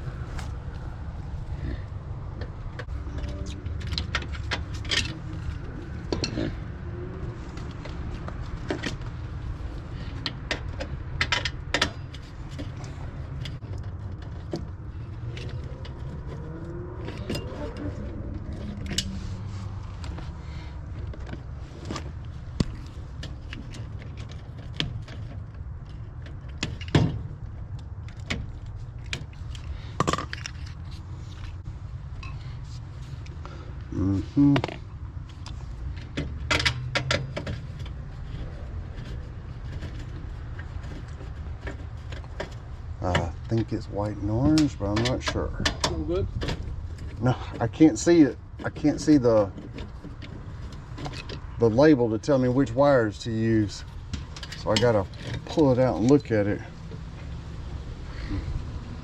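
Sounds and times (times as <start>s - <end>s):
steady low rumble: 0.0s - 36.8s.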